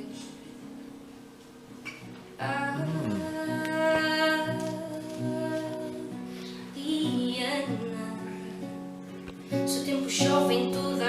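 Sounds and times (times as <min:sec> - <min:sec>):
woman singing: 0:00.0 - 0:00.4, 0:02.4 - 0:08.8, 0:09.5 - 0:11.0
acoustic guitar: 0:00.0 - 0:11.0.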